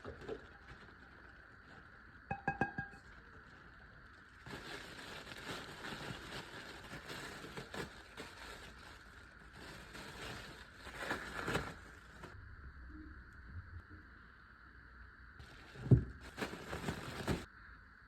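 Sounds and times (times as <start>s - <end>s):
rustling handling noise: 0.0s - 12.4s, 15.4s - 17.5s.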